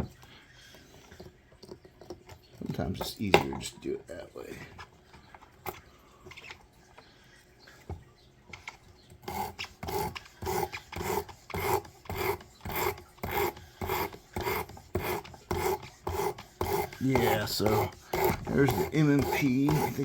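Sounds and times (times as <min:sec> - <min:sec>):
knife rasping on sandpaper: 0:09.2 - 0:20.0.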